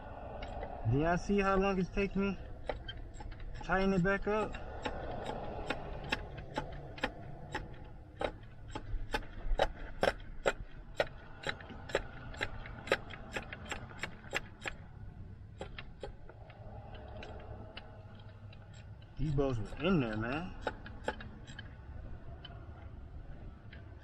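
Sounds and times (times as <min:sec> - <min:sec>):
hand ratchet clicking: 0:02.2 - 0:14.9, 0:15.6 - 0:21.8.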